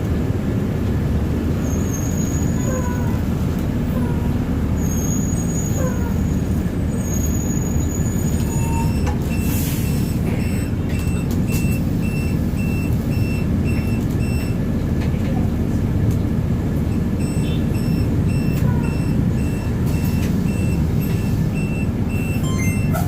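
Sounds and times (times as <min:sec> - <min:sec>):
bus engine running: 0:00.0 - 0:23.0
traffic rumble: 0:00.0 - 0:23.0
warning beeps: 0:08.6 - 0:14.6, 0:16.9 - 0:23.0.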